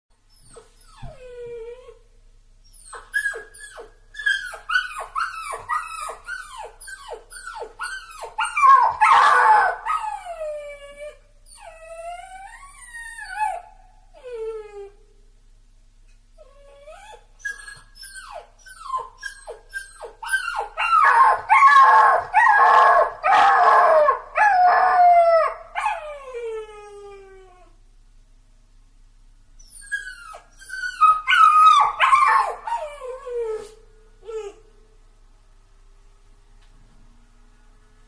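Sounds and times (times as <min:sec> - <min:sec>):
puppy crying: 0:02.7 - 0:13.7, 0:16.6 - 0:27.7, 0:29.6 - 0:34.6.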